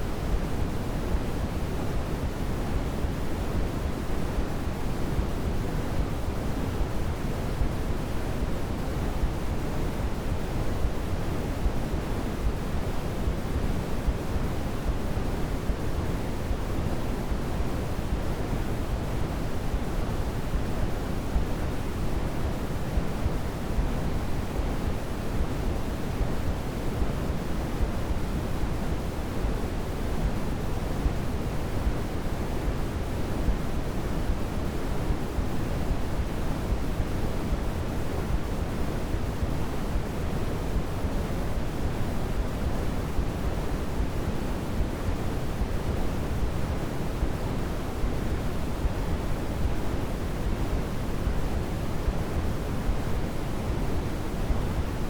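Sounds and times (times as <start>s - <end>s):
white noise hiss: 0.0s - 55.0s.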